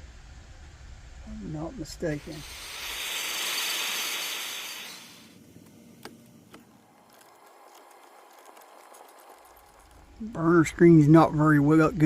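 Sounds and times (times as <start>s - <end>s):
hiss: 0.0s - 5.4s.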